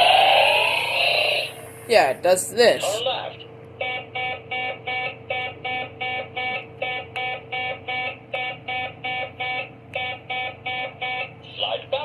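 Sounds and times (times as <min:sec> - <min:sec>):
toy robot electronic beeping: 0:00.0 - 0:01.6.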